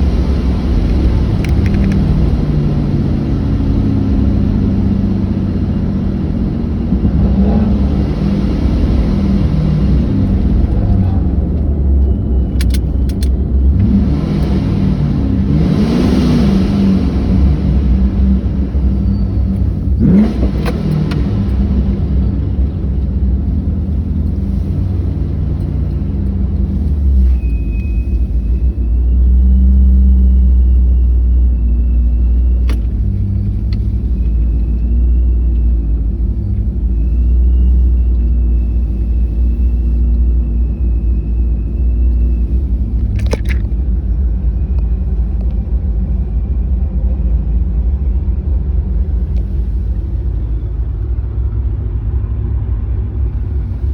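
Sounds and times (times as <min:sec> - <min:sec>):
car exhaust rumbling: 0:00.0 - 0:53.9
sharp clicks: 0:01.4 - 0:02.2.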